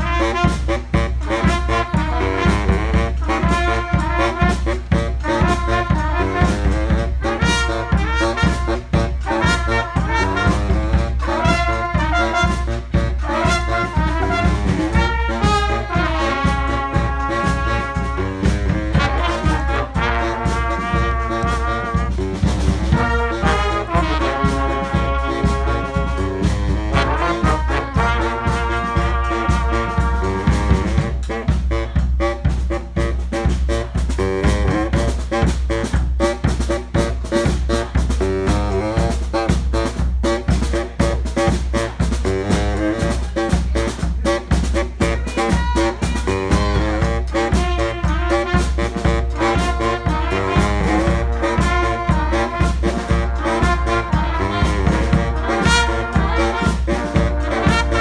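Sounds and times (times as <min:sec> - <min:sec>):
drums: 0:00.0 - 0:58.0
street brass band playing: 0:00.0 - 0:58.0.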